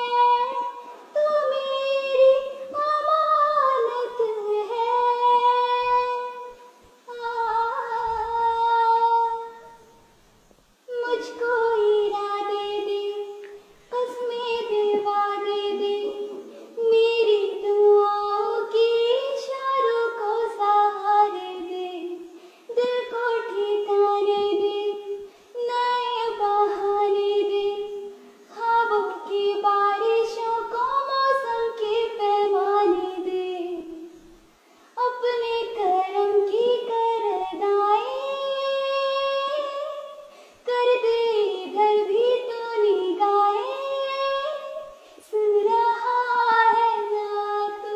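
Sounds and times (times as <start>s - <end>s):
girl singing solo: 10.9s - 34.2s.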